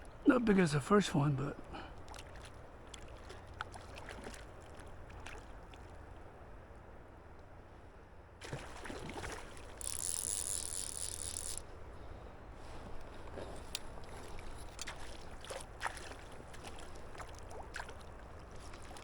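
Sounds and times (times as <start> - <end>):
river flow rumble: 0.0 - 19.0
wind: 0.0 - 19.0
fish splashing in water: 8.4 - 10.0, 14.2 - 19.0.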